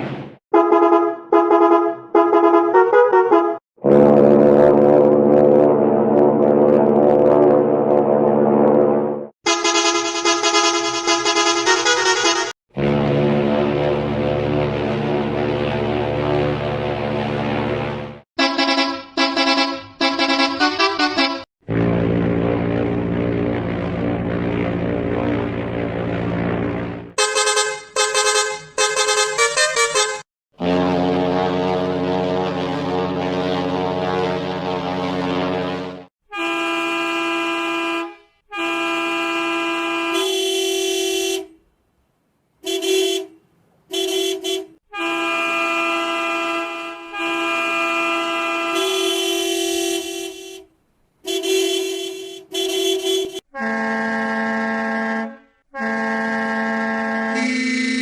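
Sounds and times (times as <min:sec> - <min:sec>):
high-pitched horn blasts: 0:00.5 - 0:17.4, 0:18.4 - 0:22.6, 0:27.2 - 0:41.6, 0:42.6 - 0:50.7, 0:51.3 - 0:58.0
rapid stuttering horn toots: 0:00.5 - 0:41.6, 0:42.6 - 0:58.0
low bus horn chords: 0:00.5 - 0:41.7, 0:42.6 - 0:58.0.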